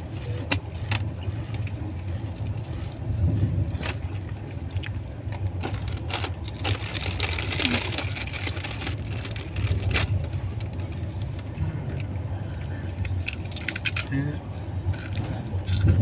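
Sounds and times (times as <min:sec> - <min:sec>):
train rumbling: 0:00.0 - 0:16.0
sharp clicks and rattles: 0:12.9 - 0:16.0.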